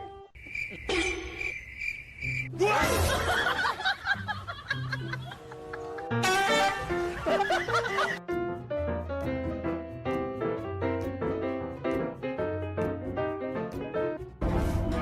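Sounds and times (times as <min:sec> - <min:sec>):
background music: 0:02.5 - 0:15.0
people laughing: 0:02.7 - 0:06.2, 0:06.8 - 0:08.2.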